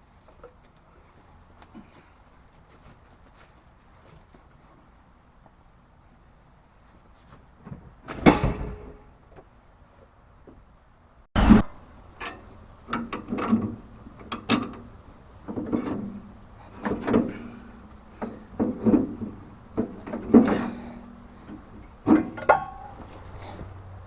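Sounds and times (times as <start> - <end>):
mechanical clanks and knocks: 11.5 - 23.4.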